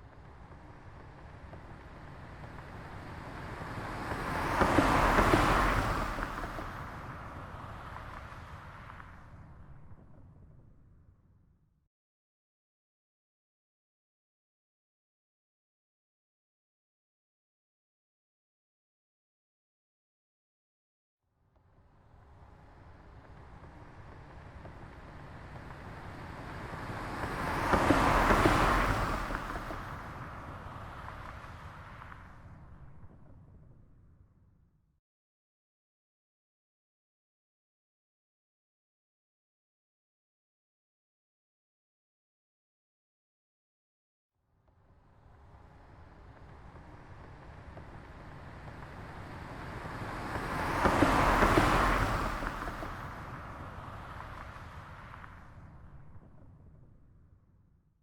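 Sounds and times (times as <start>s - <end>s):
car passing by: 0.0s - 10.8s, 21.6s - 34.0s, 44.7s - 57.1s.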